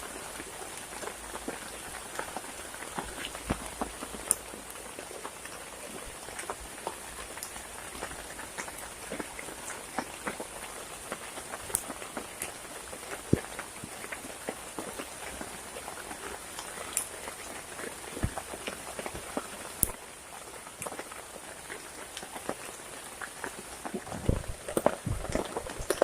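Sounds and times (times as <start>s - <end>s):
rain falling: 0.0s - 26.0s
raindrops ticking: 0.0s - 26.0s.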